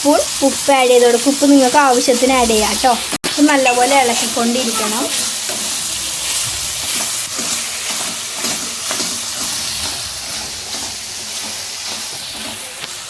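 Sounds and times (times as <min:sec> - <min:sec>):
gourd sizzling in hot oil: 0:00.0 - 0:13.0
spoon scraping and tapping pan: 0:03.6 - 0:13.0.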